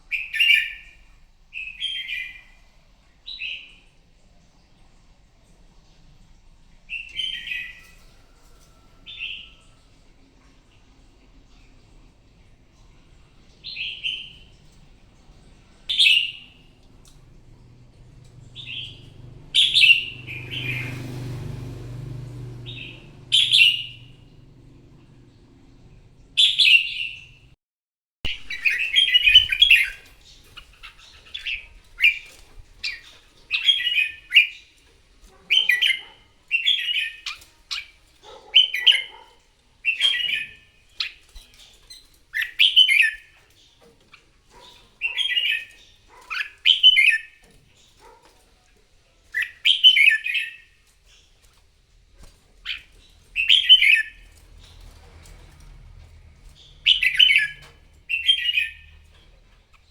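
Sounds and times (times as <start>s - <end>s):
bird singing warbled phrases: 0.0s - 2.6s, 6.9s - 8.0s, 12.7s - 21.5s, 22.6s - 27.5s, 28.3s - 48.3s, 49.2s - 51.5s, 52.1s - 54.9s, 56.4s - 59.9s.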